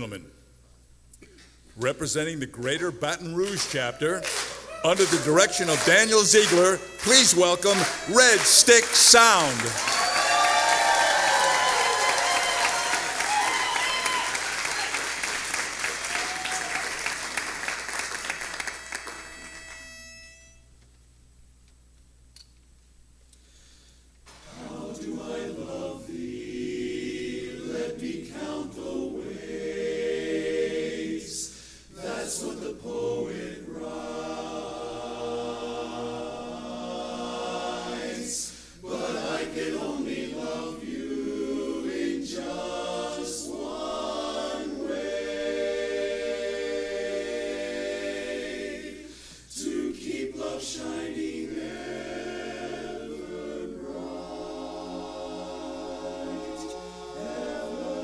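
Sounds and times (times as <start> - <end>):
barbershop chorus singing a cappella: 2.7 - 13.3, 24.3 - 58.0
singers breathing: 23.4 - 24.2, 31.4 - 32.0, 38.4 - 38.8, 49.0 - 49.6.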